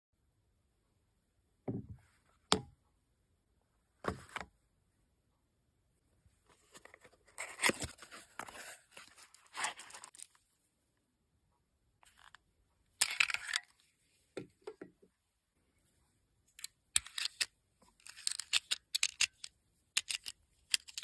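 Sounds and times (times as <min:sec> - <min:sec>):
knock: 0:01.7 - 0:02.0.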